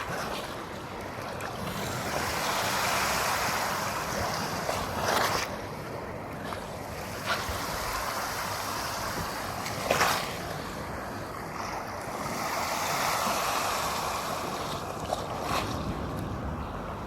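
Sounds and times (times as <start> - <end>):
sea surf: 0.0 - 17.0
wind on microphone: 0.0 - 17.0.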